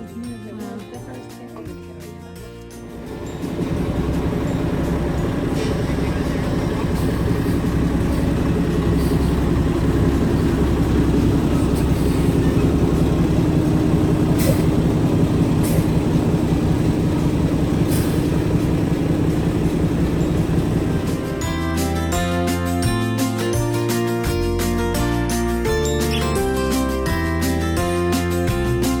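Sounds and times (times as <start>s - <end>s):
heavy vehicle engine running: 2.6s - 23.4s.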